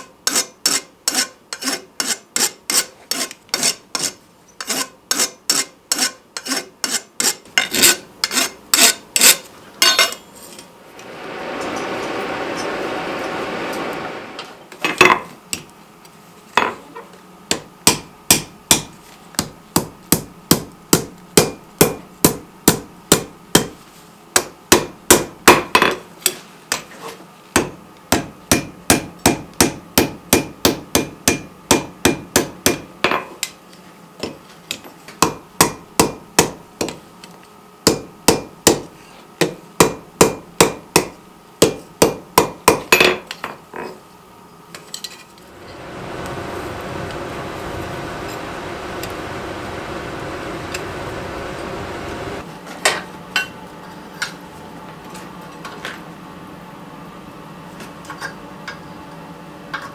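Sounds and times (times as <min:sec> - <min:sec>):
hammer striking steel on anvil: 0:17.5 - 0:23.7, 0:27.6 - 0:33.3.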